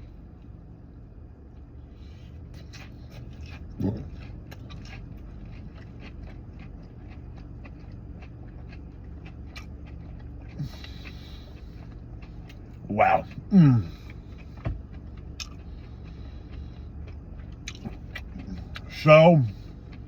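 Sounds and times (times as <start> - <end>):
low hum: 0.0 - 20.0
crunchy chewing: 1.6 - 20.0
person humming mm: 13.5 - 14.0.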